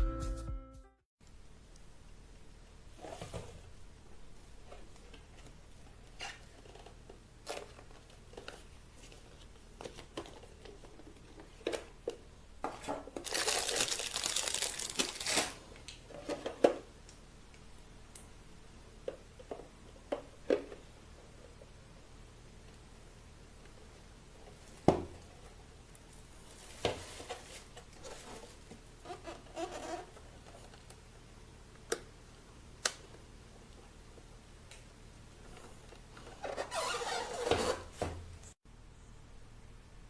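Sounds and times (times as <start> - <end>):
crinkling and rustling: 4.6 - 16.9, 23.6 - 38.6.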